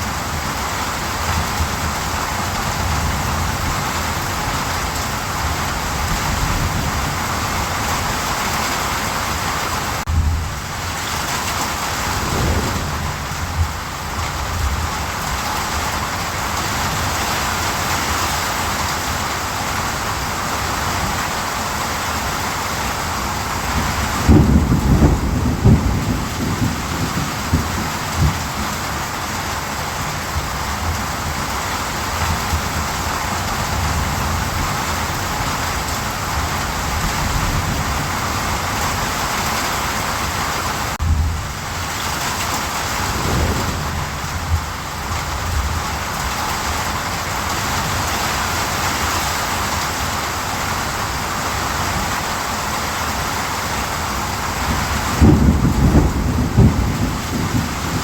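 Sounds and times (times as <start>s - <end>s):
steady rain: 0.0s - 58.0s
thunder rumbling: 10.0s - 17.8s, 23.4s - 29.2s, 40.9s - 48.0s, 54.3s - 58.0s.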